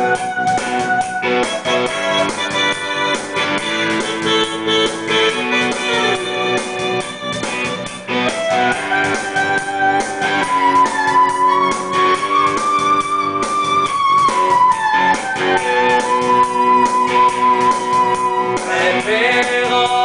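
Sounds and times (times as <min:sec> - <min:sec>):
keyboard music over a beat: 0:00.0 - 0:20.0.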